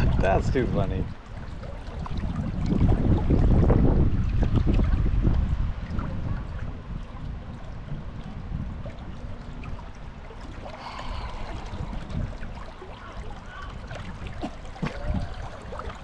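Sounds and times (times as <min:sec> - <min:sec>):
wind rumble on microphone: 0:00.0 - 0:16.0
river water flowing: 0:01.2 - 0:03.7, 0:05.9 - 0:16.0.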